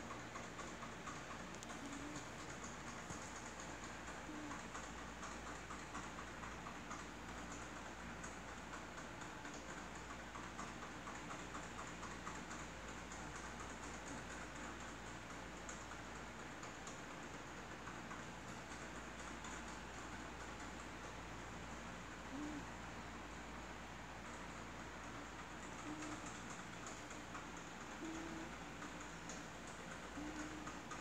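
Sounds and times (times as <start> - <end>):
cat snoring faintly: 1.6 - 2.5, 4.1 - 4.9, 22.2 - 22.8, 25.6 - 26.5, 27.9 - 29.1, 30.0 - 31.0.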